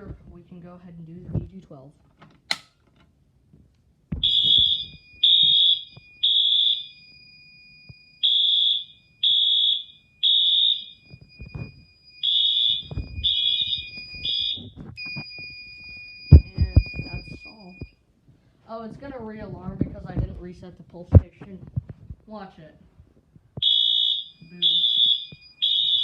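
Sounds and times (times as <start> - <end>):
fire alarm horn blasts: 4.2 - 7.1, 8.2 - 14.7, 23.6 - 26.0
faint steady high tone: 15.0 - 18.0.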